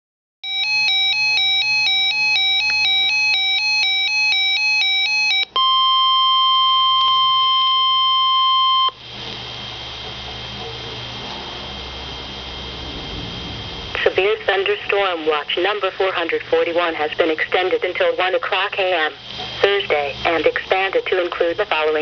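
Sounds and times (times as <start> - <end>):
steady warning alarm tone: 0.4 - 22.0
radio channel hiss and hum: 8.9 - 22.0.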